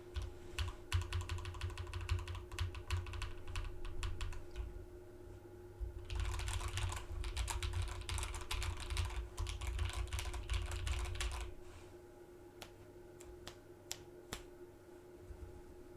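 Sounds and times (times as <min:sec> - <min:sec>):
mechanical keyboard typing: 0:00.2 - 0:04.7, 0:06.0 - 0:11.5.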